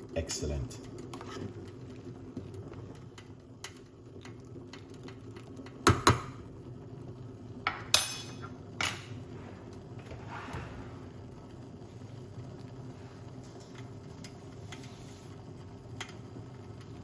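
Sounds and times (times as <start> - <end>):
low steady hum: 0.0 - 17.0
crockery and utensils clinking: 7.7 - 9.2.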